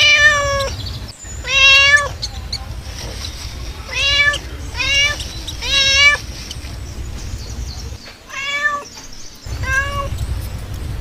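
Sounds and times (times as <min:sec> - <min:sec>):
cat meowing: 0:00.0 - 0:00.7, 0:01.4 - 0:02.2, 0:03.9 - 0:06.2, 0:08.3 - 0:08.9, 0:09.5 - 0:10.1.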